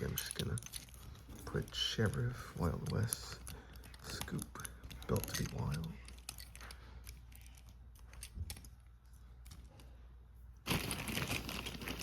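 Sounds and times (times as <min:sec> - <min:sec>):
faint clicks and knocks: 0:00.0 - 0:10.0
plastic crinkling: 0:10.6 - 0:12.0.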